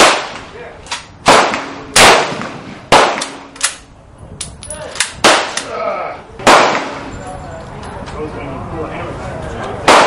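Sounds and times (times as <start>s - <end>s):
gunshots with echo: 0.0s - 0.5s, 1.2s - 3.6s, 6.4s - 7.1s.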